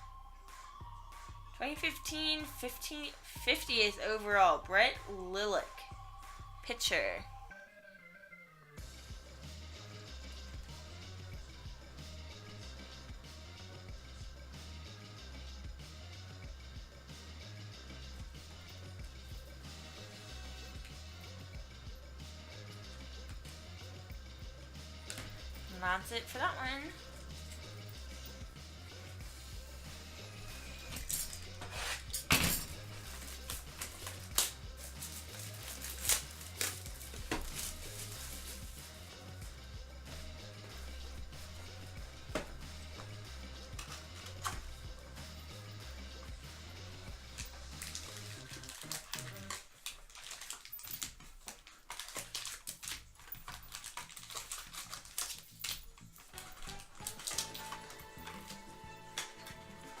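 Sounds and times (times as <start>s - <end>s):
background music: 0.0s - 60.0s
cards being handled: 30.5s - 39.1s, 42.4s - 44.7s, 47.3s - 60.0s
foil packaging crinkling: 32.7s - 39.0s, 47.6s - 59.5s.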